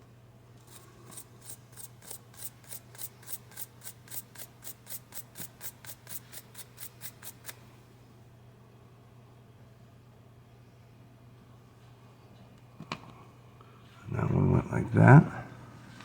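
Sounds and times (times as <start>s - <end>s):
wire brush scrubbing metal: 0.6s - 7.6s.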